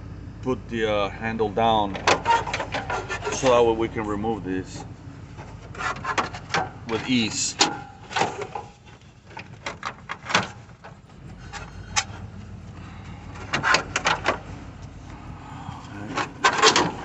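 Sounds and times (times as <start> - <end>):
low steady hum: 0.0 - 17.0
steering column clicks and knocks: 5.4 - 12.6, 13.2 - 15.0, 16.2 - 17.0.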